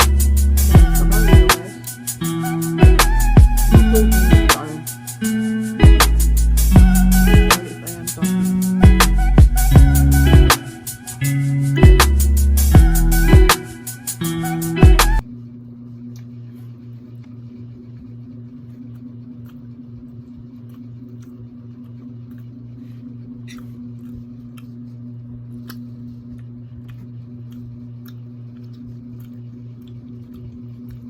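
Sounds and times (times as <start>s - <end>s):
steady low hum: 0.0s - 31.0s
person eating seafood: 18.7s - 31.0s.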